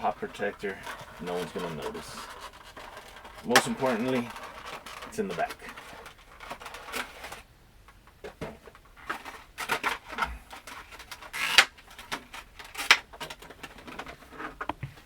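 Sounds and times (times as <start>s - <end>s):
cardboard box rustling and scraping: 0.0s - 7.5s.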